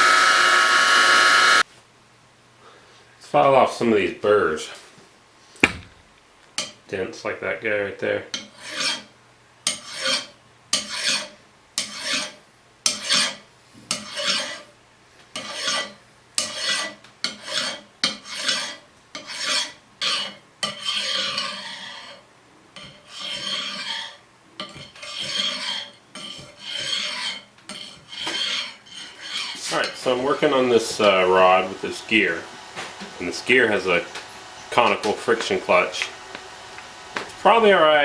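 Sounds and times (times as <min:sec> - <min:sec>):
hand file rasping on metal: 0:08.4 - 0:09.1, 0:09.7 - 0:14.7, 0:15.4 - 0:30.0.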